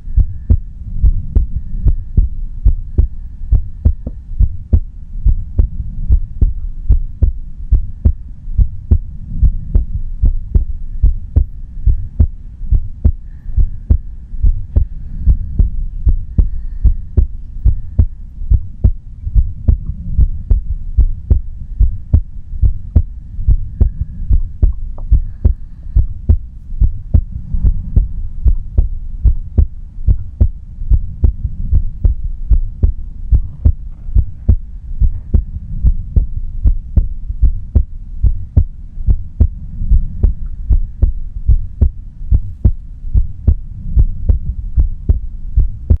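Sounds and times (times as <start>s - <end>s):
heartbeat thuds: 0.0s - 46.0s.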